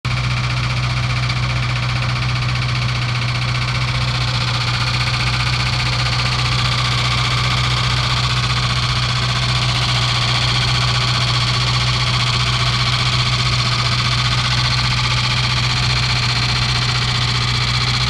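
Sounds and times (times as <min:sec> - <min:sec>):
car engine running: 0:00.1 - 0:18.0.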